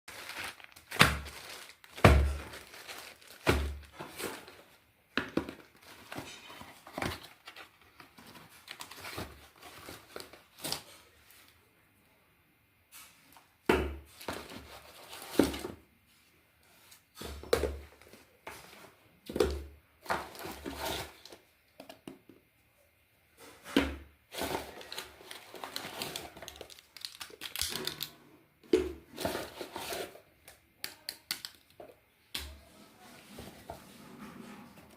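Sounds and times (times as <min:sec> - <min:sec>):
wrapping crinkling and tearing: 0:00.1 - 0:04.7, 0:05.6 - 0:11.0, 0:24.3 - 0:28.1.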